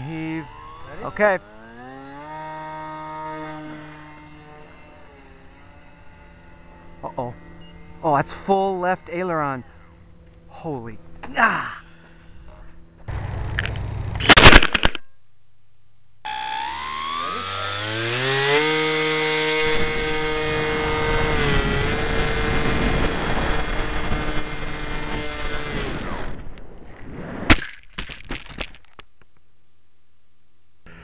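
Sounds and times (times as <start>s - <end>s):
model plane crashing: 0.0s - 7.0s, 13.1s - 15.0s, 16.3s - 26.5s
small electric motor whining: 0.0s - 11.3s, 16.3s - 26.5s.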